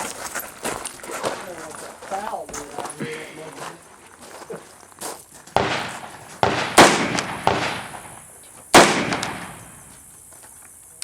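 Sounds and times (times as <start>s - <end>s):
rifle shots echoing: 5.6s - 10.1s.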